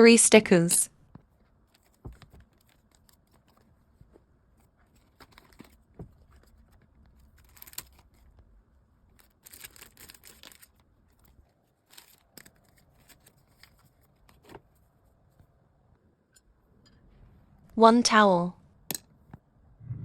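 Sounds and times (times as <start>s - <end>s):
light taps and clicks handling items: 1.0s - 8.4s, 9.1s - 15.5s
crinkling rustle: 1.2s - 14.9s.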